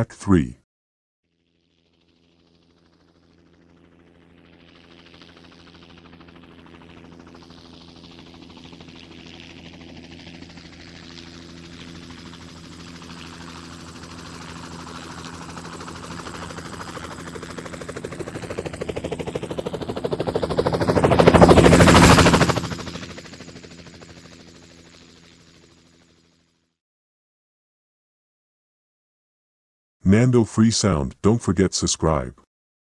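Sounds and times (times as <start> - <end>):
helicopter rotor chop: 2.6 - 26.4.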